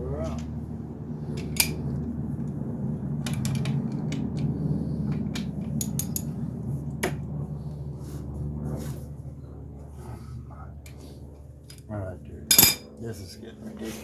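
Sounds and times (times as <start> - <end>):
steady low hum: 0.0 - 14.0
steel sockets clinking: 12.5 - 12.8.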